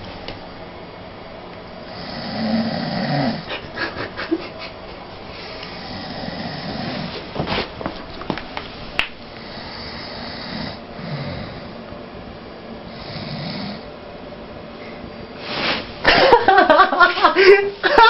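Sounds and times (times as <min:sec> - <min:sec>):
man snoring: 0:01.8 - 0:03.5, 0:05.7 - 0:07.2, 0:09.4 - 0:11.8, 0:12.9 - 0:13.9.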